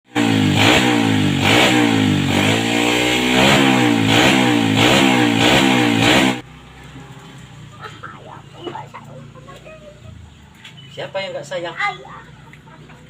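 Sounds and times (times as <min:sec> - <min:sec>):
motorcycle engine revving: 0:00.1 - 0:06.8.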